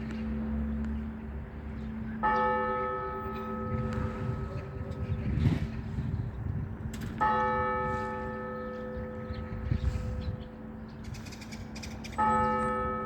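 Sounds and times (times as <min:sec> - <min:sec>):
church bell strikes: 0:00.0 - 0:05.6, 0:06.8 - 0:09.8, 0:12.1 - 0:13.0.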